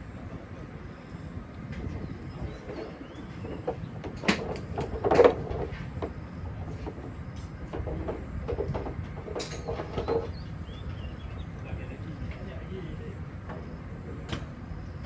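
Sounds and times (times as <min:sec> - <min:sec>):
golf clubs striking balls: 0:02.6 - 0:10.3.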